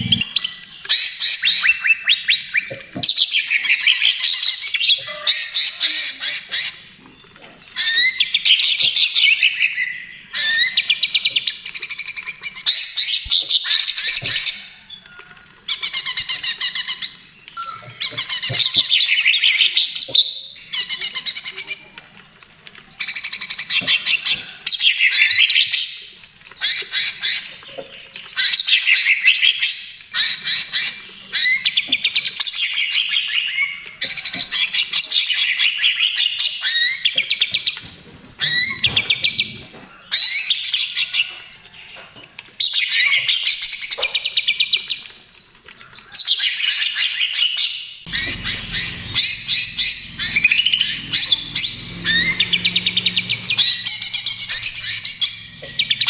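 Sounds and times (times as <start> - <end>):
low hum: 0.0 - 0.4, 48.1 - 56.0
bird singing trills: 0.0 - 22.0, 45.8 - 56.0.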